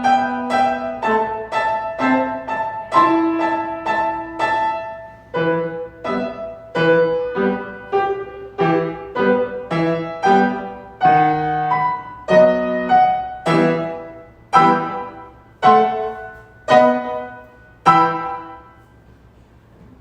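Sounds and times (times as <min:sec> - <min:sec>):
piano chords: 0:00.0 - 0:19.4.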